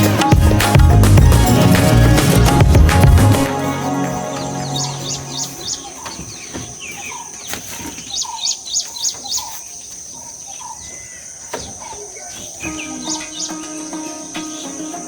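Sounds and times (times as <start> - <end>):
wild birds chirping and calling: 3.3 - 15.0.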